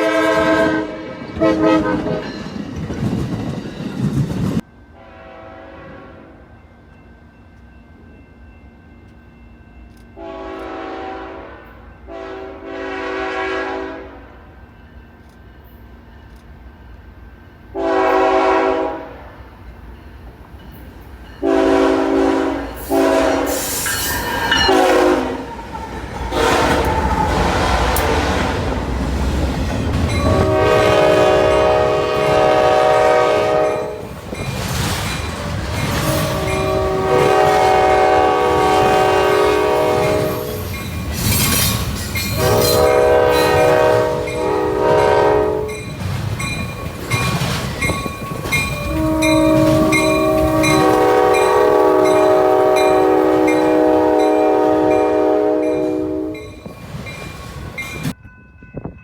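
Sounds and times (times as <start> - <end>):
locomotive air horn blasts: 0.0 - 2.2, 5.0 - 6.4, 10.2 - 14.3, 17.8 - 19.3, 21.4 - 25.5, 26.3 - 28.5, 30.0 - 34.1, 36.2 - 40.6, 42.4 - 45.9, 48.7 - 56.7
passing train rumbling: 0.0 - 59.0
wheels clattering over rail joints: 34.0 - 37.7, 39.9 - 44.6, 45.7 - 53.8.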